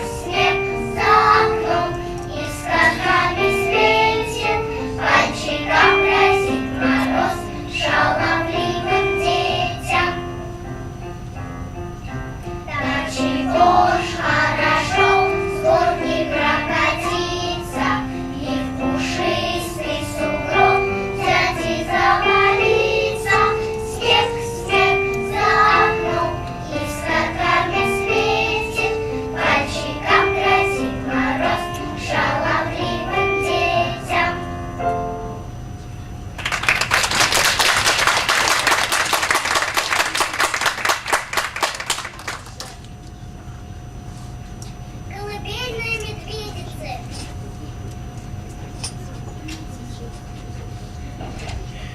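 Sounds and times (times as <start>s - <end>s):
children's choir singing: 0.0s - 10.4s, 12.7s - 35.1s
audience applauding: 36.4s - 42.9s.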